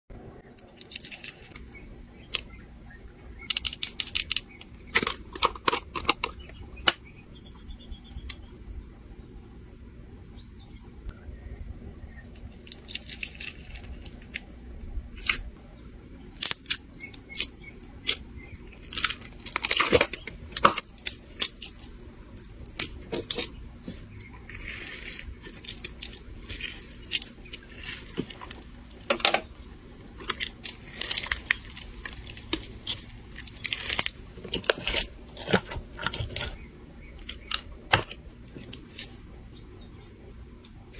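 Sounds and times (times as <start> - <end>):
crunchy slime crackling and popping: 12.3 - 15.6, 16.3 - 39.2.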